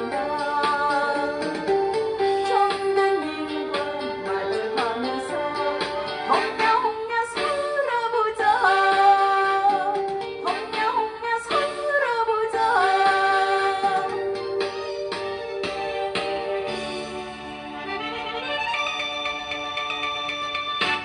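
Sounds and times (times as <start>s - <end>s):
woman singing: 0.0s - 1.8s, 2.4s - 14.2s
backing band playing: 13.6s - 21.0s.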